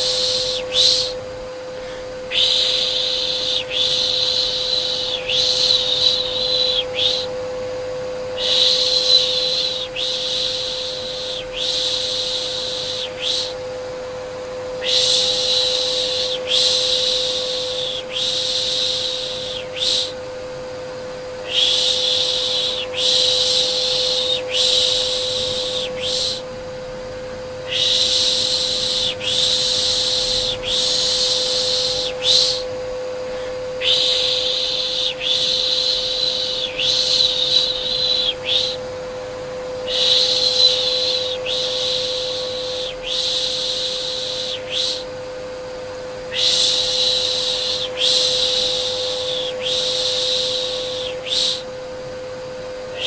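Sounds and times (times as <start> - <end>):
person shushing: 0.0 - 1.2, 1.8 - 7.3, 8.3 - 13.6, 14.8 - 20.2, 21.4 - 26.5, 27.6 - 32.7, 33.3 - 38.8, 39.8 - 45.1
vacuum cleaner running: 0.0 - 53.0.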